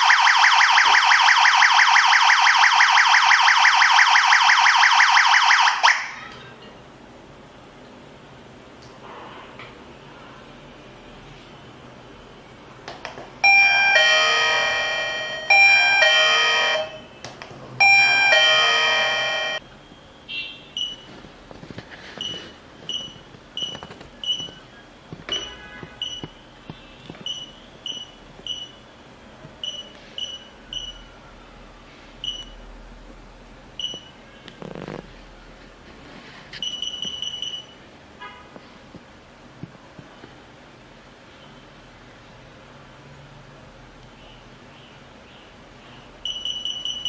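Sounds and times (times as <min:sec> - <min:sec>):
electronic doorbell chime: 0:13.4 - 0:17.0, 0:17.8 - 0:19.6.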